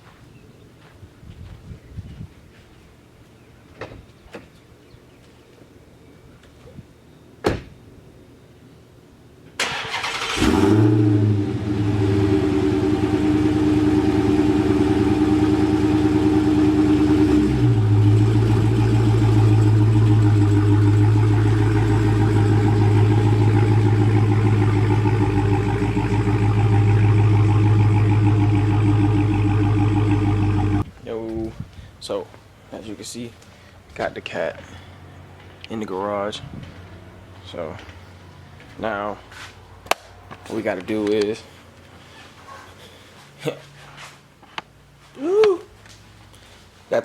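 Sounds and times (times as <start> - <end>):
car engine starting and idling: 9.6 - 30.9.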